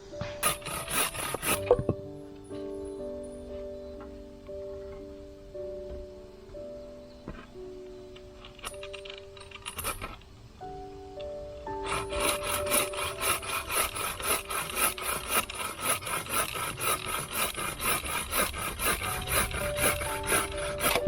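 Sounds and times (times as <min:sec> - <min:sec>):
background music: 0:00.0 - 0:21.0
hand tool rasping strokes: 0:00.2 - 0:01.9, 0:08.4 - 0:10.2, 0:11.7 - 0:21.0.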